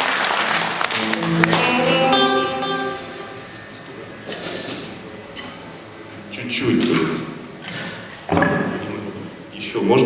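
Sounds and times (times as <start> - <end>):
applause: 0.0 - 1.9
band sustained notes: 0.0 - 4.4.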